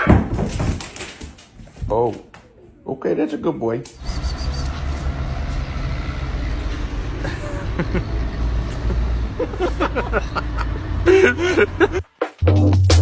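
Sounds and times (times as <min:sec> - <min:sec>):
low vehicle rumble: 0:04.0 - 0:12.0.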